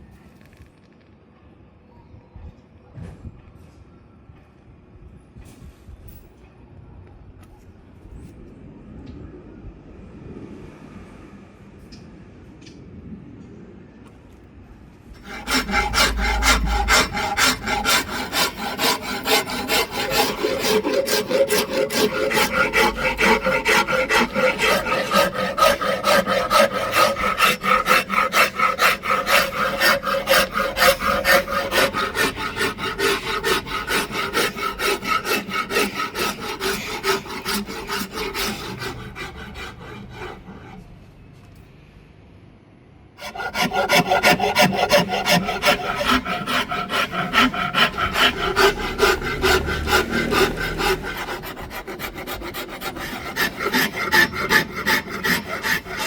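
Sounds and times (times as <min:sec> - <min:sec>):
wood rasping by hand: 0:15.2 - 0:40.9, 0:43.2 - 0:56.0.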